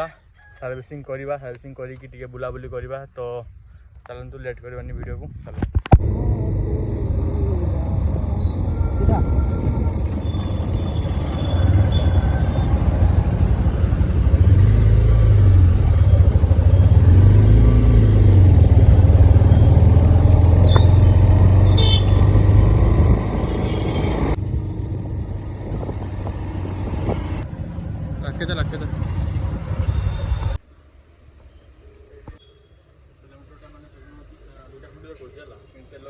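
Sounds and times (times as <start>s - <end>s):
motorcycle engine riding: 5.8s - 30.6s.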